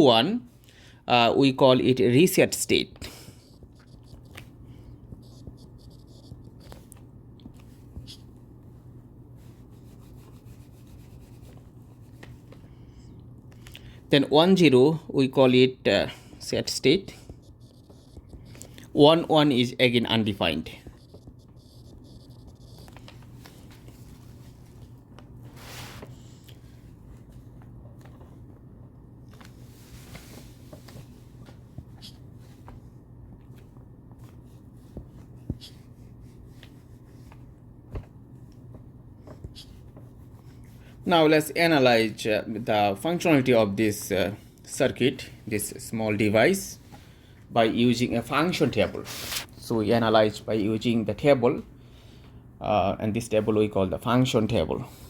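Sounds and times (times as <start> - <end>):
low electrical hum: 0.0 - 55.0
pen scratching while writing: 3.4 - 4.5, 5.1 - 6.8, 17.3 - 18.7, 20.8 - 23.1.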